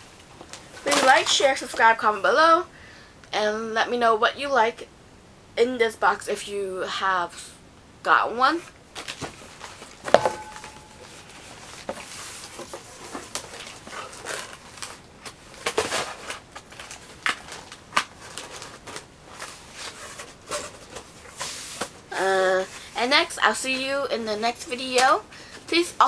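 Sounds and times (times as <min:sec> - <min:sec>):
packaging crinkling: 0:09.0 - 0:21.3.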